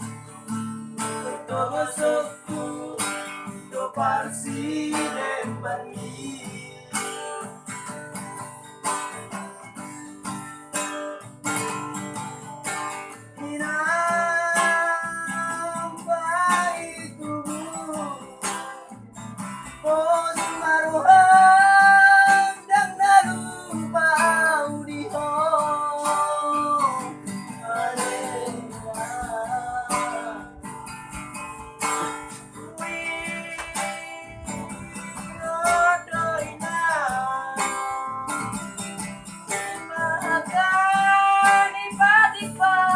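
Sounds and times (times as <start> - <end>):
acoustic guitar strumming: 0.0 - 42.9
person singing: 1.2 - 7.0, 13.4 - 19.0, 19.8 - 30.8, 31.9 - 38.6, 39.5 - 42.9.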